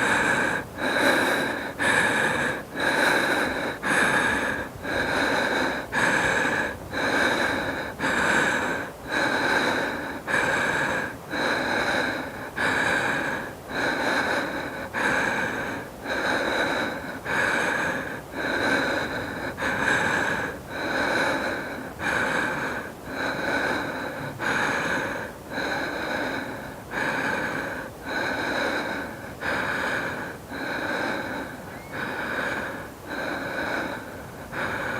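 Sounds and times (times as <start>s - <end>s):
woman breathing heavily: 0.0s - 34.9s.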